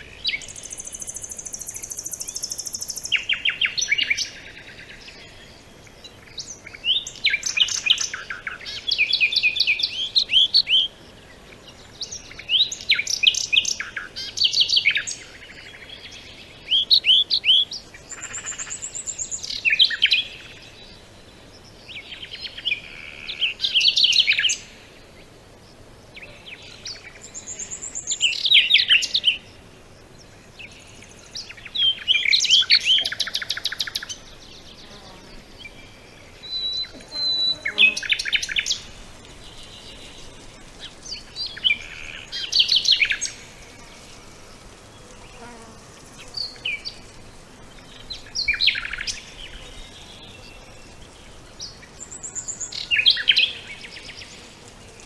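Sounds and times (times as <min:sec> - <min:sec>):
songbird singing: 0:00.0 - 0:55.0
thin bird whistle: 0:36.5 - 0:37.9.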